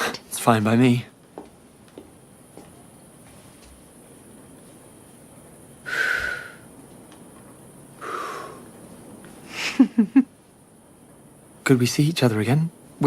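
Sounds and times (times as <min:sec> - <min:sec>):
breathy exhalations: 0:05.8 - 0:06.7, 0:08.0 - 0:08.7.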